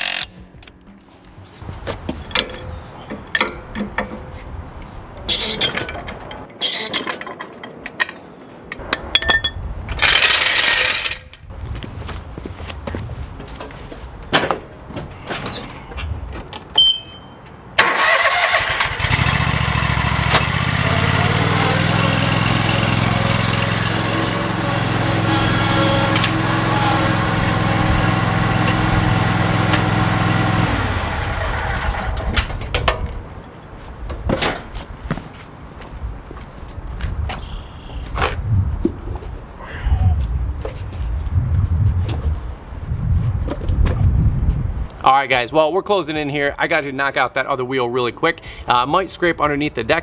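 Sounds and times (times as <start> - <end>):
metal tools clinking: 2.3 - 8.1, 8.8 - 11.5
lawn mower engine running: 17.8 - 33.8.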